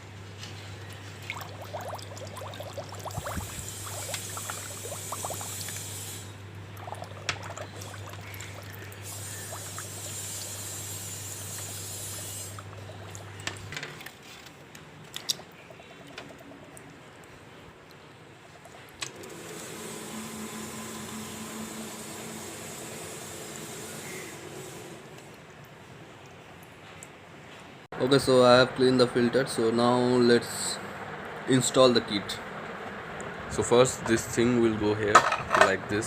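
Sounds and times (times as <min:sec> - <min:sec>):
low steady hum: 0:00.0 - 0:19.0
water running from a tap: 0:01.2 - 0:13.4.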